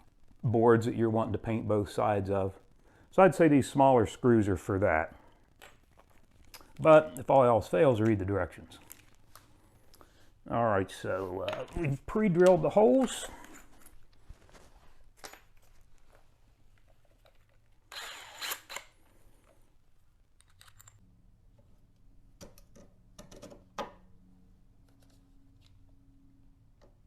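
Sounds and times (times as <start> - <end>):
cordless drill driving screw: 17.9 - 18.9.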